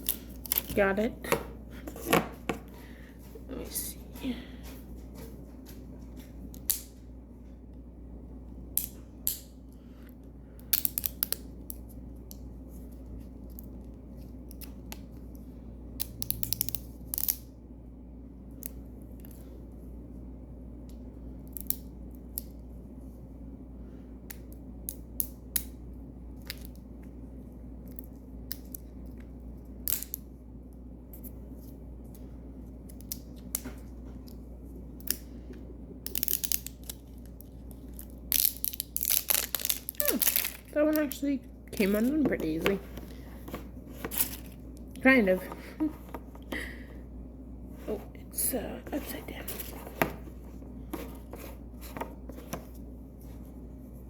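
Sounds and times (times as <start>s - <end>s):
steady low hum: 0.0s - 54.0s
plastic crinkling: 36.1s - 41.2s
scissors cutting plastic packaging: 38.3s - 40.7s.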